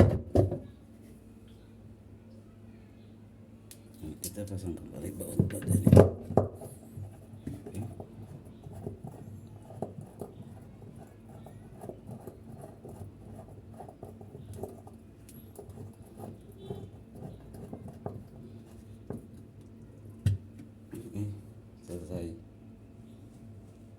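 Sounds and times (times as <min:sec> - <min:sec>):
tool clicking and scratching on parts: 0:05.2 - 0:18.4.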